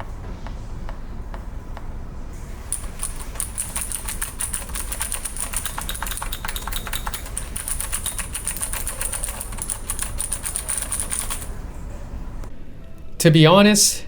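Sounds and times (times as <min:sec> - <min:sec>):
clicky keyboard typing: 0:02.7 - 0:11.6.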